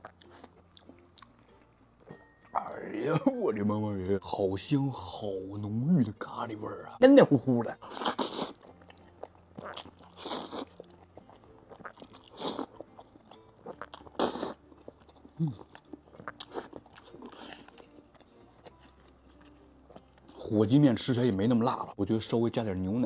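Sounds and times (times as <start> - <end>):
wet mouth noises: 0.0 - 1.7, 7.7 - 20.4
person chewing noodles: 0.0 - 2.2, 7.7 - 20.5.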